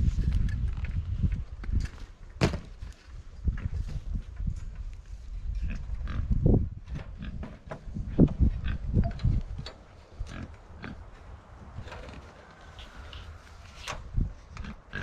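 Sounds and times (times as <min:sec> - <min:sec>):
pigs grunting: 0:14.6 - 0:15.0.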